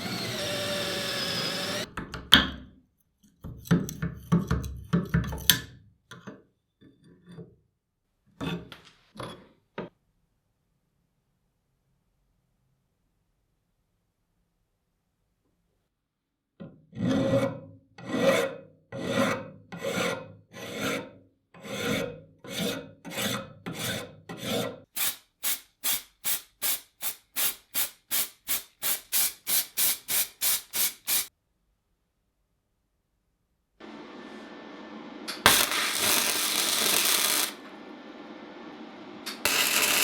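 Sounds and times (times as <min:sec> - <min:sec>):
file rasping on metal: 0:17.0 - 0:24.9, 0:39.4 - 0:40.0.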